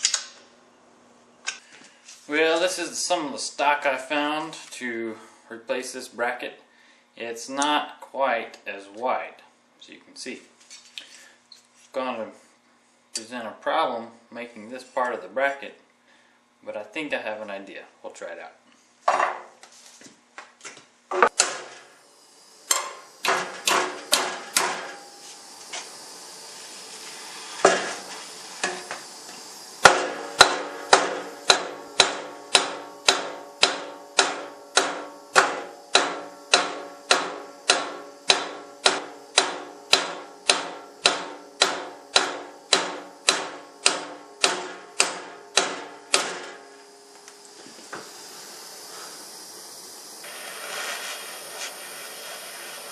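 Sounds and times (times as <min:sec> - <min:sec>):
hammer striking metal: 0:22.7 - 0:25.1, 0:29.8 - 0:46.6.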